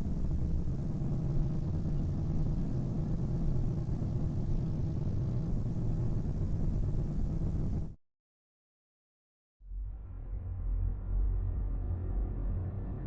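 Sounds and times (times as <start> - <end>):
faint hum: 0.0 - 8.0, 9.7 - 13.0
synthetic low rumbling drone: 9.6 - 13.0.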